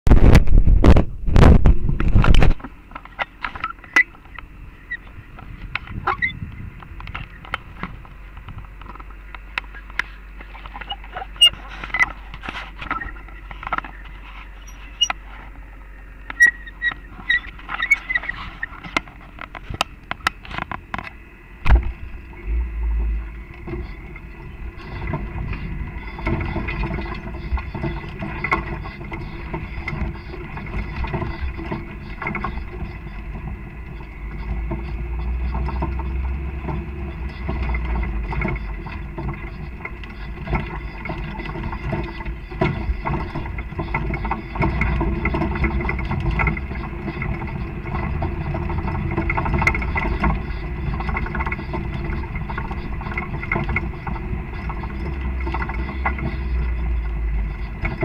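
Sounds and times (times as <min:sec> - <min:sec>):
off-road vehicle engine rumbling: 0:00.0 - 0:58.0
sharp knocks: 0:21.6 - 0:22.0.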